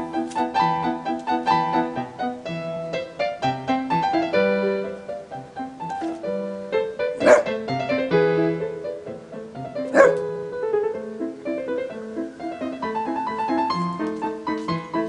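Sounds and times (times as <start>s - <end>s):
piano music: 0.0s - 15.0s
dog barking: 7.2s - 7.6s, 9.9s - 10.2s.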